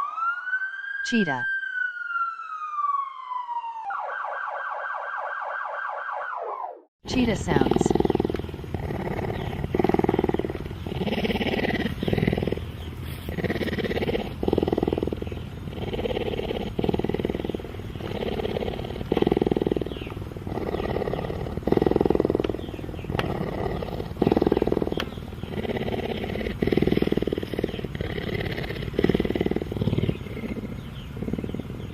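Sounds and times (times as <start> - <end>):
cheetah pulsing calls: 7.1 - 31.9.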